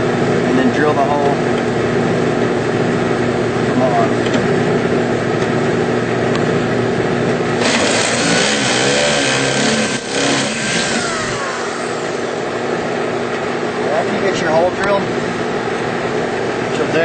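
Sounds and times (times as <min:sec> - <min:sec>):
steady machinery hum: 0:00.0 - 0:17.0
power drill drilling plastic: 0:07.6 - 0:12.2.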